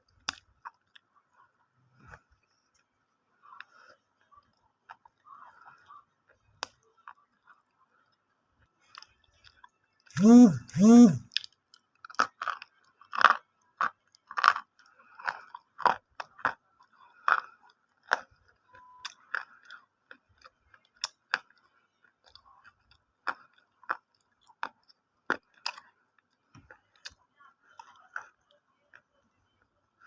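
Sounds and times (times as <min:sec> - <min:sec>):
person chewing crunchy food: 0:10.2 - 0:27.2.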